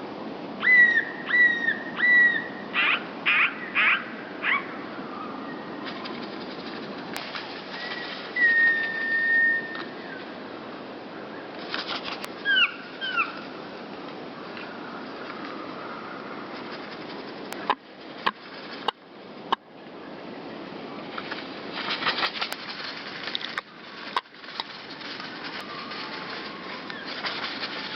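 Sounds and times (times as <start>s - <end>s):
steady background hiss: 0.0s - 27.9s
songbirds calling: 0.6s - 27.9s
wing flutters: 5.8s - 10.3s, 11.5s - 13.6s, 15.1s - 19.0s, 21.0s - 27.9s.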